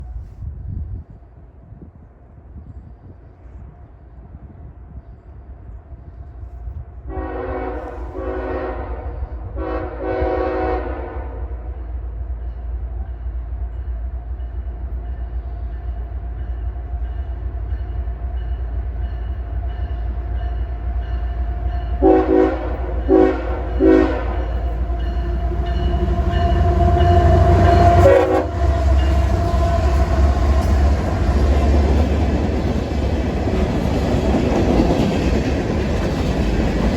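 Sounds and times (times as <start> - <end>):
locomotive engine rumble: 5.5 - 36.9
train air horn: 7.0 - 11.8, 21.7 - 31.5
wheels clacking on rails: 12.0 - 36.9.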